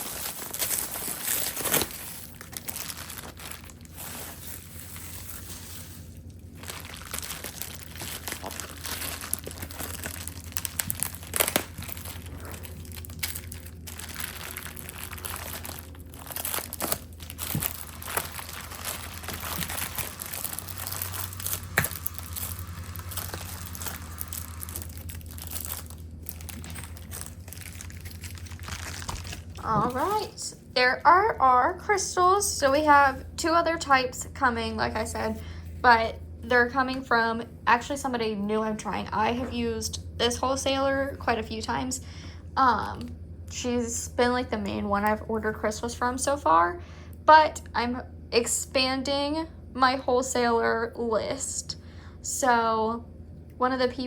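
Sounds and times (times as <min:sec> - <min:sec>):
packaging crinkling: 0:00.0 - 0:30.3
low steady hum: 0:00.0 - 0:54.0.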